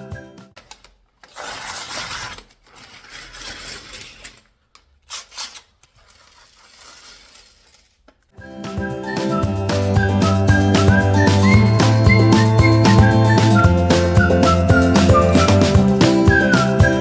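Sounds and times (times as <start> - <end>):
plastic pieces clicking: 0.6 - 8.4
plastic pieces rubbing and scraping: 0.6 - 8.4.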